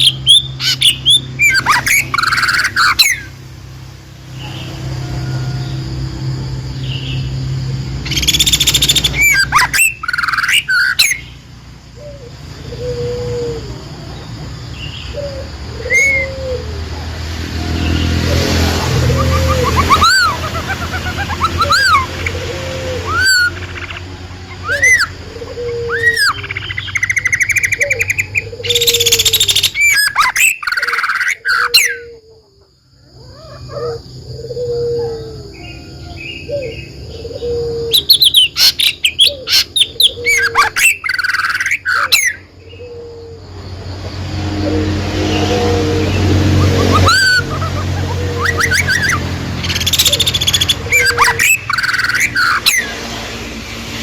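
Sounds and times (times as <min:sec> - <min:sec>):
songbirds chirping: 0:00.0 - 0:54.0.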